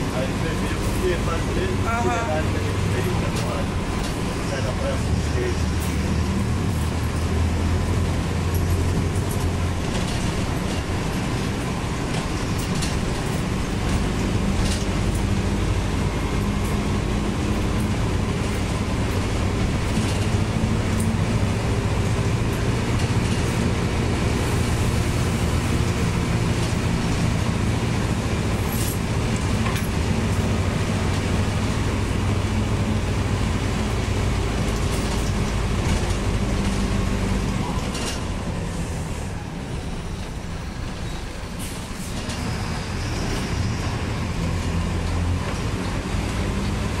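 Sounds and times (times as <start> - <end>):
bus engine drone: 0.0 - 47.0
road noise: 0.0 - 47.0
rattles and clicks: 8.5 - 15.4, 17.4 - 21.5, 34.1 - 38.4.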